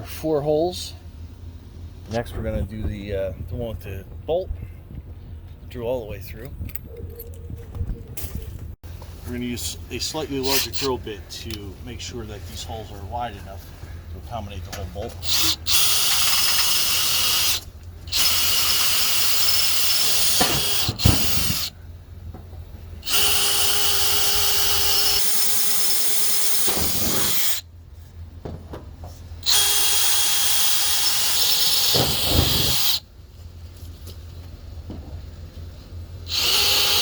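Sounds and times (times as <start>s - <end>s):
electric drill boring through steel: 10.4s - 10.9s, 15.2s - 21.7s, 23.0s - 27.6s, 29.4s - 33.0s, 36.3s - 37.0s.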